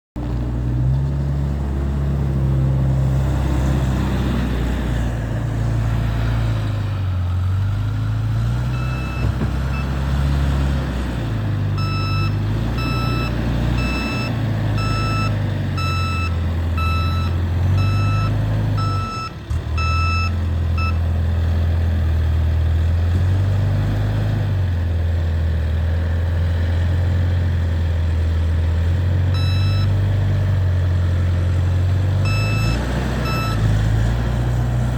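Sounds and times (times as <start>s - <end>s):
loader engine revving: 0.2s - 34.9s
reverse alarm beeping: 8.7s - 9.9s, 11.8s - 21.0s, 29.3s - 30.0s, 32.2s - 33.7s.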